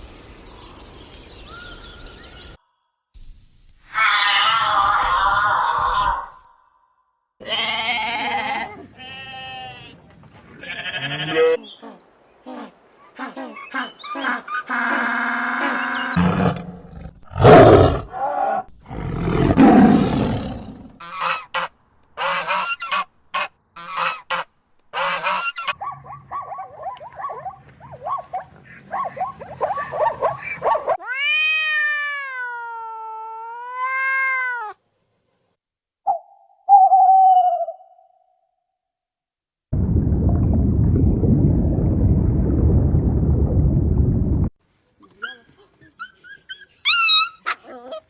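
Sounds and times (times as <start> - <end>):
rising and falling animal call: 3.9 - 6.6, 36.1 - 38.2.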